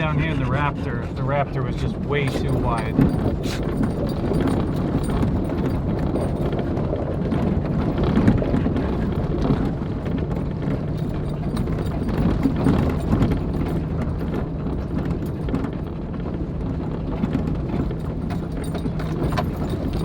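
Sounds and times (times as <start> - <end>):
engine and tyres rumbling: 0.0 - 20.0
knocks and rattles over bumps: 1.7 - 20.0.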